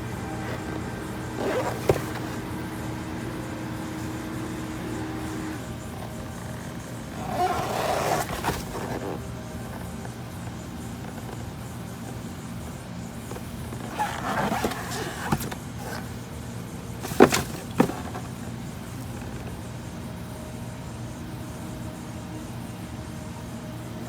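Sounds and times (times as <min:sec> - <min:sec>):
packaging rustling: 0:00.0 - 0:09.2, 0:13.8 - 0:16.2, 0:17.0 - 0:18.4
steady low hum: 0:00.0 - 0:24.0.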